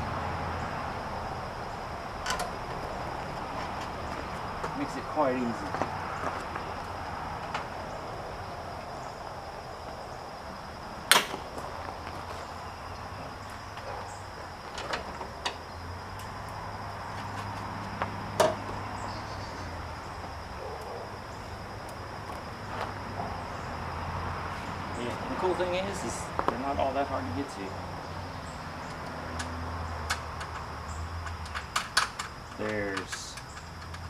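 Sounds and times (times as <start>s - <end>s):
tools knocking and clicking: 29.0s - 34.0s.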